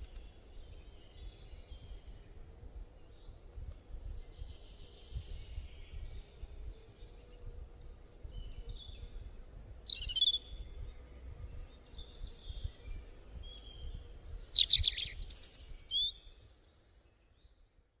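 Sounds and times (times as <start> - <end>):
birds chirping and whistling: 4.2 - 7.3, 8.2 - 16.8.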